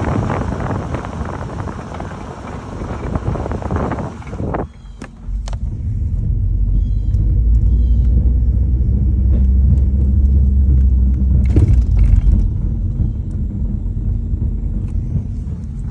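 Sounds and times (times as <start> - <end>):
car engine low rumble: 0.0 - 15.9
rattling burst: 11.3 - 15.9.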